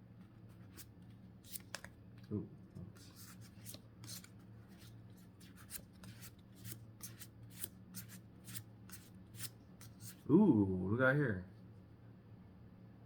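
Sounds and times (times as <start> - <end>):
cards flicking by hand: 1.4 - 2.0.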